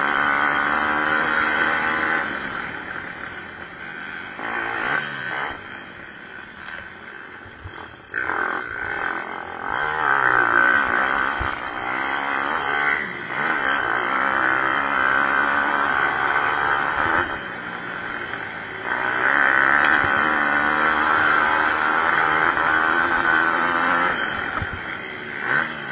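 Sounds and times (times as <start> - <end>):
pit bike engines revving: 0.0 - 25.9.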